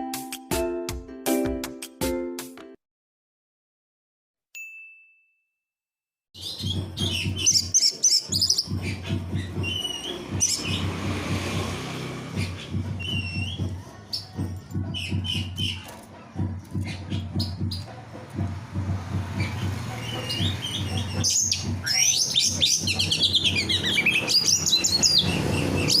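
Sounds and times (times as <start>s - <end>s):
songbird singing: 6.4s - 18.0s, 18.8s - 26.0s.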